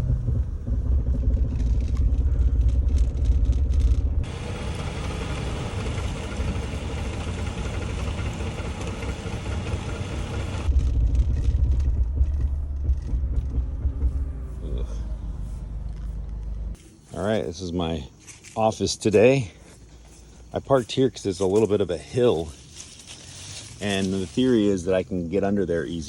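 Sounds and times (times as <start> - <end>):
clatter: 0.0 - 14.4
car low rumble: 0.0 - 17.3.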